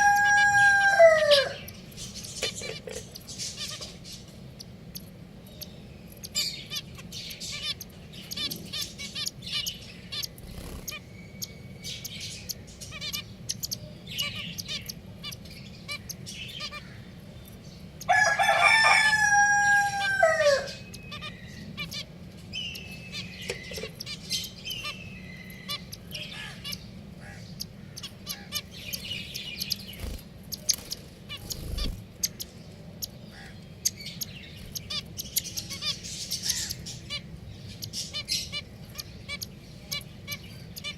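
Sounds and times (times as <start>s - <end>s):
rooster crowing: 0.0s - 1.7s, 18.1s - 20.9s
finches chirping: 0.0s - 40.9s.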